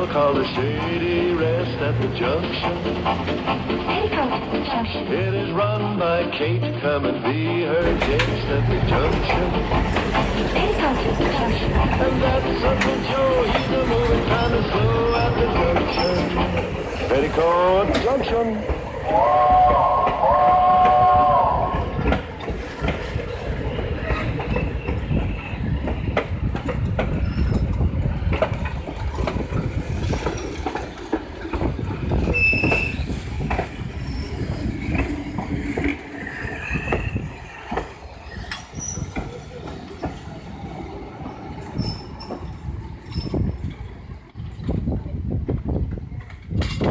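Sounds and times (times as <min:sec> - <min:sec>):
wheels clacking over rail joints: 0:00.0 - 0:06.0, 0:07.8 - 0:46.9
train rumbling on track: 0:00.0 - 0:46.9
high wheel squeals: 0:09.5 - 0:17.8, 0:22.7 - 0:25.8, 0:32.2 - 0:40.2, 0:41.6 - 0:43.6.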